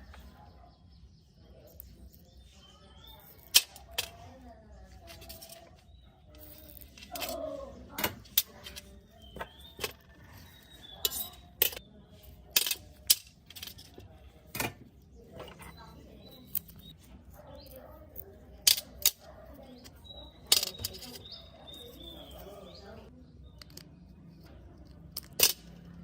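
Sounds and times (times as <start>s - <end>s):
repair tools clicking on parts: 25.1s - 25.7s.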